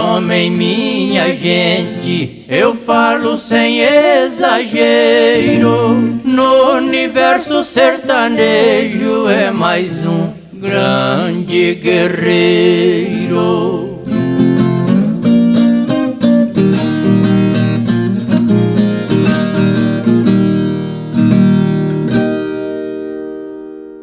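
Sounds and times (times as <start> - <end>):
man singing: 0.0 - 15.5
acoustic string instrument: 0.0 - 23.8.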